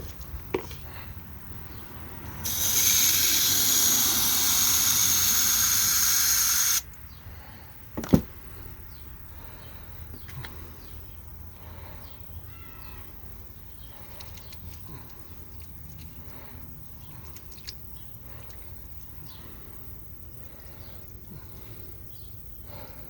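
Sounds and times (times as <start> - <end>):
water spraying: 2.4 - 6.8.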